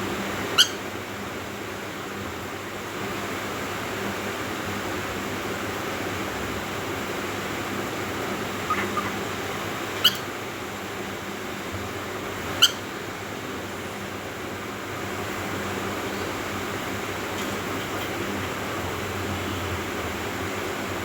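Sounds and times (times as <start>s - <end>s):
cockatiel chirping: 0.6s - 0.8s, 8.6s - 9.3s, 9.9s - 10.3s, 12.6s - 12.9s.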